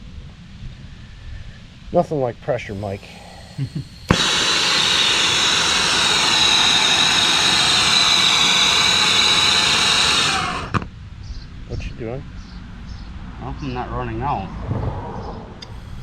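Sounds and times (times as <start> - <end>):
torch flame hissing: 2.6 - 10.9, 15.6 - 16.0
torch igniter click: 2.8 - 10.9.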